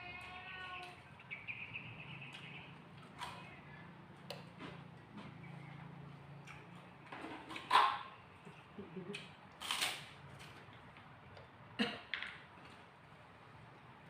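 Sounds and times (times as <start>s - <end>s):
crunching fried fish: 9.5s - 10.6s.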